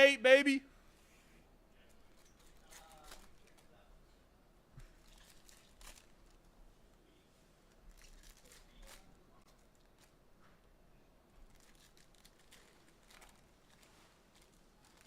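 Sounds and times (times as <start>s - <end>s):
wrappers and cards rustling: 2.0s - 3.8s, 4.8s - 6.5s, 7.7s - 10.2s, 11.4s - 15.0s.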